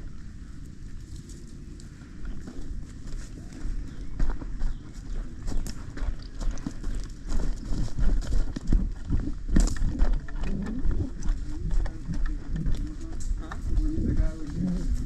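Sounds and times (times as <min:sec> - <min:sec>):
footsteps outdoors: 0:00.0 - 0:15.0
low rumble on microphone: 0:00.0 - 0:15.0
gear knocking and rattling: 0:06.5 - 0:14.5.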